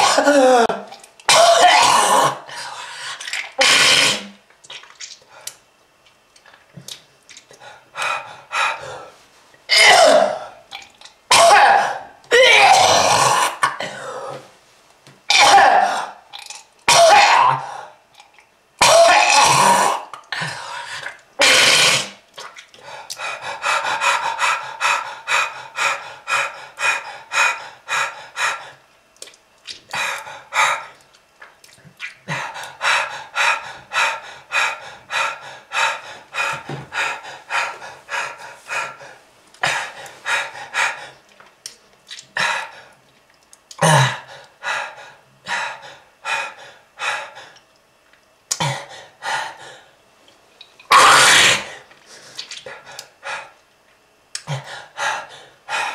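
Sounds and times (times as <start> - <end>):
person clearing throat: 0.0 - 2.4, 9.7 - 10.5, 11.3 - 14.4, 15.3 - 16.2, 18.8 - 20.5, 43.8 - 44.2
person coughing hard: 0.0 - 2.4, 9.7 - 10.5, 11.3 - 14.1, 15.3 - 16.2, 16.9 - 17.7, 18.8 - 20.0, 21.4 - 22.1.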